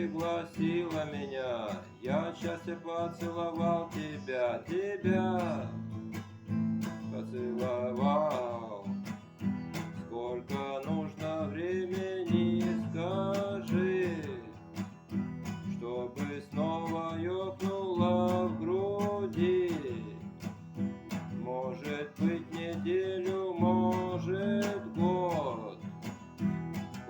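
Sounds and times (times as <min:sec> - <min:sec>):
man singing: 0:00.0 - 0:26.2
strummed acoustic guitar: 0:00.0 - 0:27.0.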